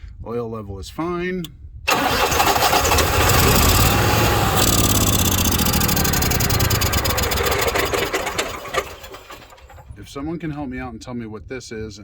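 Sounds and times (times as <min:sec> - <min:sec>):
generator engine cranking: 0:01.9 - 0:10.0.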